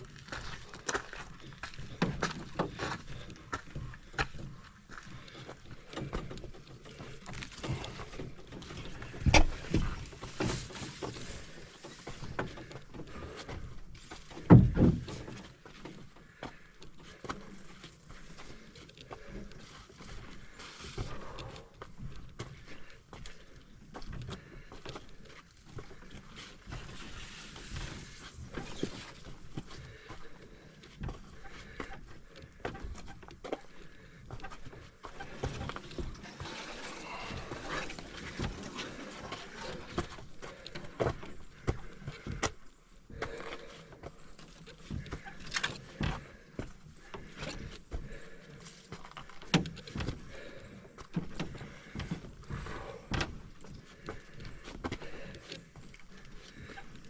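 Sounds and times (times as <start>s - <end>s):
footsteps on trail: 0.0s - 57.0s
heavy breathing and grunting: 29.6s - 57.0s.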